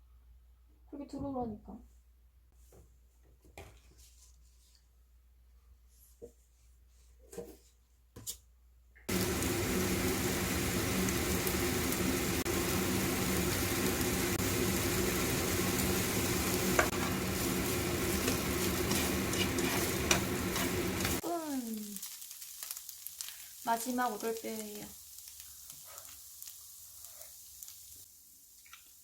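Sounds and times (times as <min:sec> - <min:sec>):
meat sizzling in a pan: 0:09.1 - 0:29.0.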